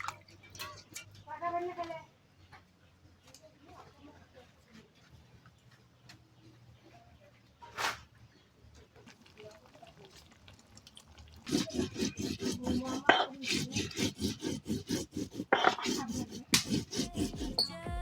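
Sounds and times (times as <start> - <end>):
rapid rhythmic scraping: 11.4 - 18.0.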